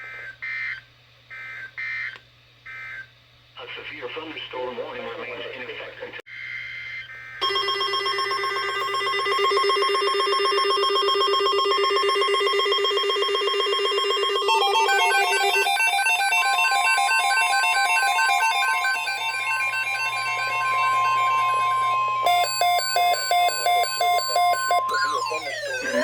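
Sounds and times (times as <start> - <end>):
steady high alarm tone: 6.4 - 26.0
fast warbling stepped beeps: 7.4 - 26.0
harsh ringing buzz: 7.4 - 26.0.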